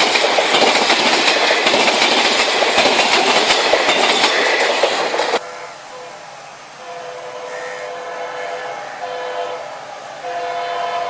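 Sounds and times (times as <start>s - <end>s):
locomotive horn blasts: 5.4s - 11.0s.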